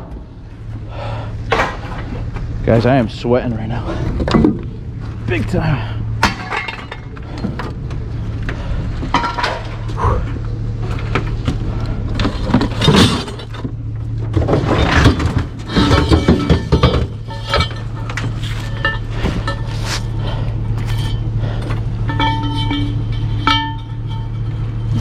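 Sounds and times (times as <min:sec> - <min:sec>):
steady low hum: 0:00.0 - 0:25.0
scrap steel clanking: 0:06.1 - 0:25.0.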